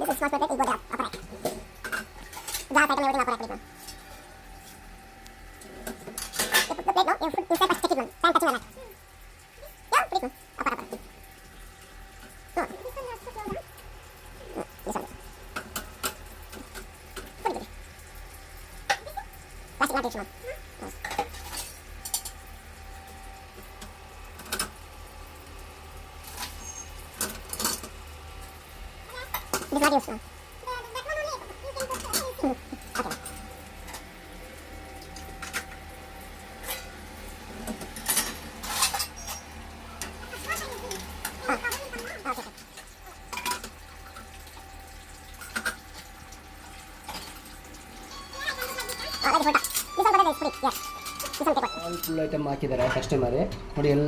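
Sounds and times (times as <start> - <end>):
low steady hum: 0.0 - 54.0
dishes clinking in dishwasher racks: 5.6 - 8.6, 37.5 - 41.0, 43.2 - 43.8, 48.1 - 54.0.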